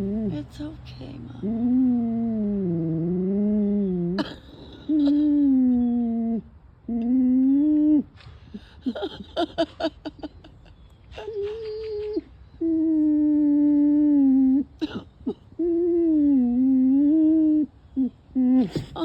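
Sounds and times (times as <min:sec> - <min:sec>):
dog whining and whimpering: 0:10.7 - 0:19.0.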